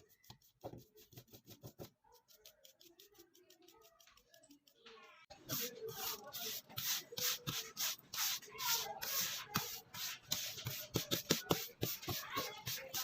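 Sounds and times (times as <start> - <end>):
hand sanding strokes: 5.4 - 13.0.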